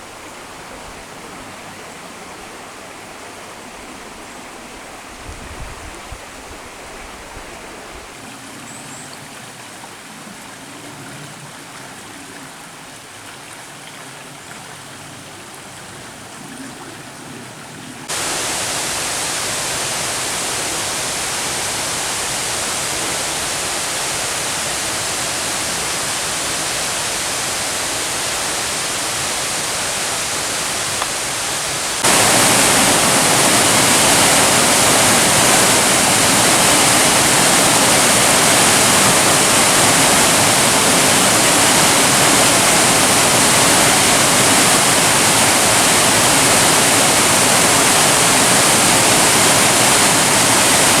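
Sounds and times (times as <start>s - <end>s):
mountain stream rushing: 18.0s - 51.0s.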